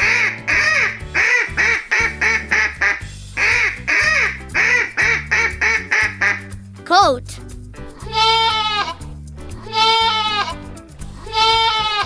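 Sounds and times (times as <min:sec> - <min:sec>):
duck quacking: 0:00.0 - 0:06.4
backing music: 0:00.0 - 0:12.0.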